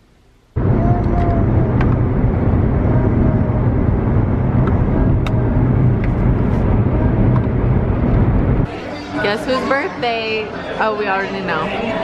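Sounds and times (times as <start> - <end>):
car driving rumble: 0.6 - 8.7.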